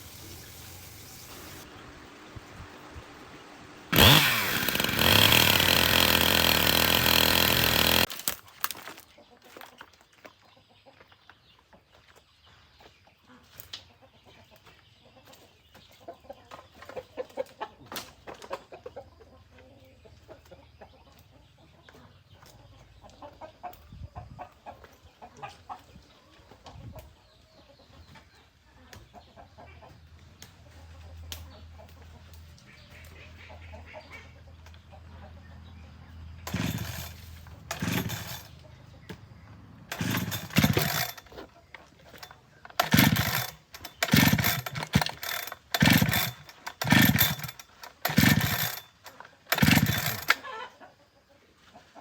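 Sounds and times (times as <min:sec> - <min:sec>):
chickens clucking: 0:12.8 - 0:36.6, 0:50.3 - 0:52.0.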